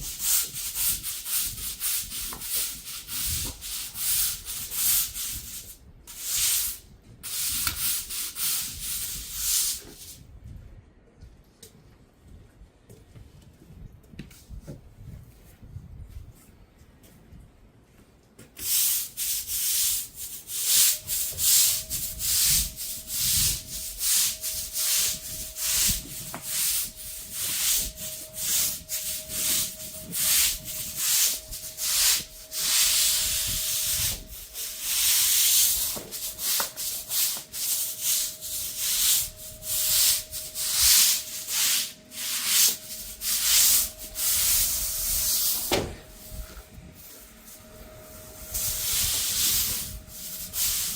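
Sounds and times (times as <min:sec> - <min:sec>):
pressure washer spraying concrete: 0:00.0 - 0:10.2, 0:18.6 - 0:46.4, 0:48.6 - 0:50.9
machine whine: 0:20.7 - 0:50.9.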